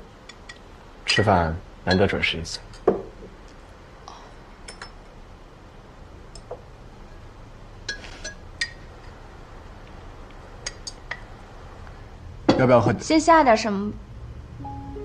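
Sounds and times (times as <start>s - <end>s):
faint low room hum: 0.0s - 15.0s
tableware clinking: 4.7s - 5.0s, 7.9s - 9.1s.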